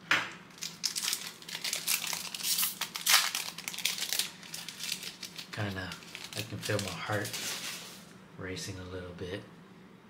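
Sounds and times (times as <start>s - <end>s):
foil wrapper crinkling: 0.5s - 8.1s.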